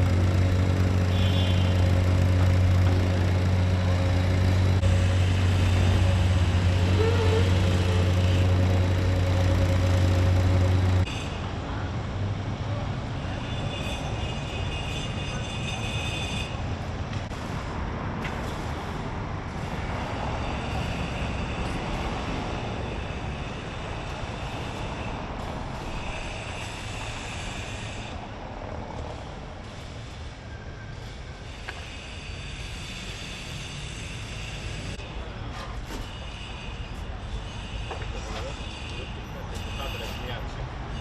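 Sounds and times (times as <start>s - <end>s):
engine humming: 0.0s - 11.1s
rumble of vehicles and machinery: 0.0s - 41.0s.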